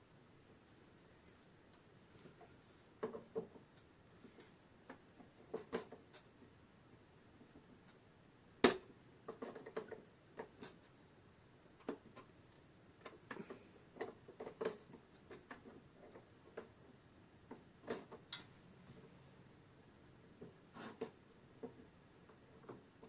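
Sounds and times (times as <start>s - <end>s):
metal clock parts clicking: 17.9s - 18.5s.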